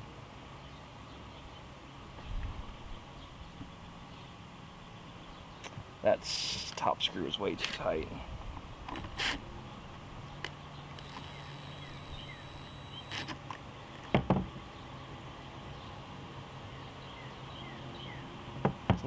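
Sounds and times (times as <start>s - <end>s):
steady low hum: 8.0s - 13.4s
plastic parts clicking: 10.4s - 13.6s.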